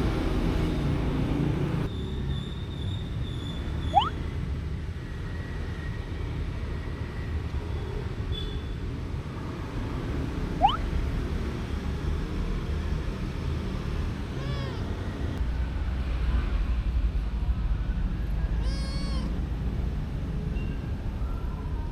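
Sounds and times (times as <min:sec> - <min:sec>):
rising sharp chirps: 0:03.9 - 0:04.2, 0:10.6 - 0:10.9.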